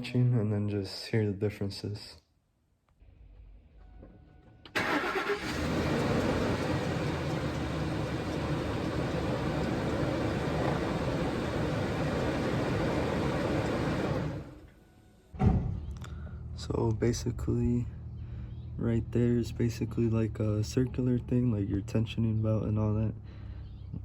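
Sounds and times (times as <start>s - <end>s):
car engine starting and running: 4.7s - 14.7s.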